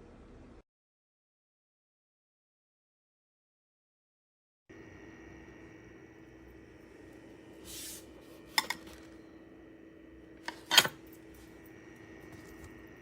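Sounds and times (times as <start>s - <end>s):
steady hum: 4.7s - 13.0s.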